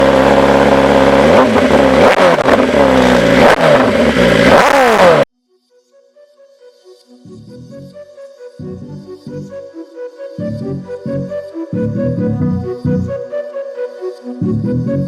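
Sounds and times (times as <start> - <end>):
motorcycle engine revving: 0.0 - 5.3
faint music: 5.4 - 15.0.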